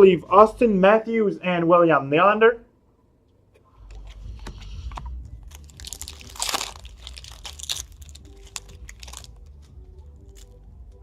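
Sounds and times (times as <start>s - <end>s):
foil wrapper crinkling: 5.4s - 10.6s.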